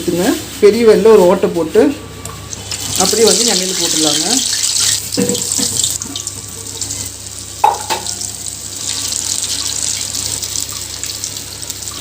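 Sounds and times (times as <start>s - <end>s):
batter frying in hot oil: 2.4s - 12.0s.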